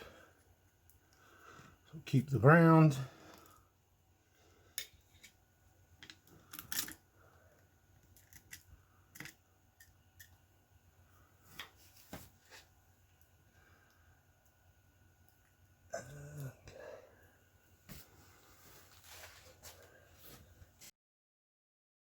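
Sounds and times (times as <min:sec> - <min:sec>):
handling small parts and wires: 0:04.7 - 0:10.4
small parts clicking: 0:06.0 - 0:07.0, 0:08.0 - 0:10.4.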